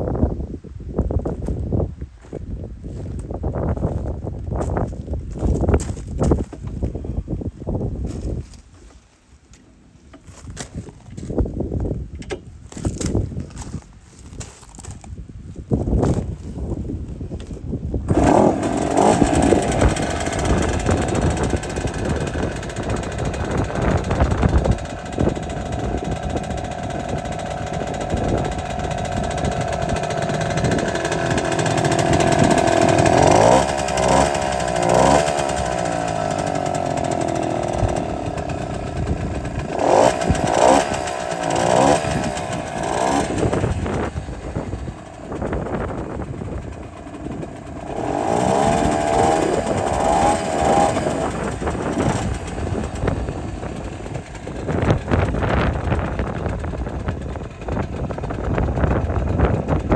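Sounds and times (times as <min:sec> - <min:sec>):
moped engine revving: 0:17.1 - 0:59.9.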